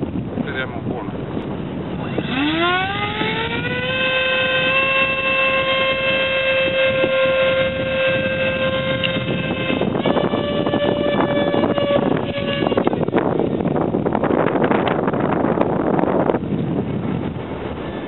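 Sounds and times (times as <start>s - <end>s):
wind buffeting microphone: 0.0s - 18.0s
electric motor whine: 2.0s - 13.0s.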